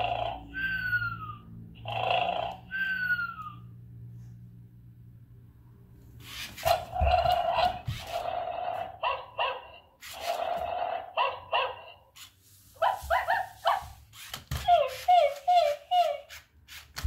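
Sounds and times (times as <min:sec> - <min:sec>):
toy dog yelps: 0:00.0 - 0:01.6, 0:02.7 - 0:03.7, 0:06.3 - 0:10.4, 0:11.0 - 0:16.6
toy dog barking through speaker: 0:06.7 - 0:12.2, 0:12.8 - 0:14.0, 0:14.6 - 0:16.4.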